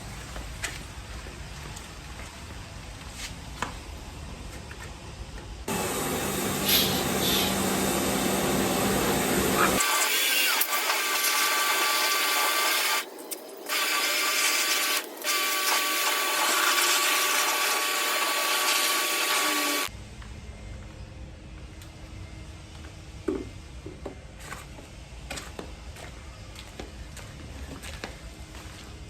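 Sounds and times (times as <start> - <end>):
pressure washer motor hum: 5.7 - 13.1
water spray hissing: 5.7 - 13.1.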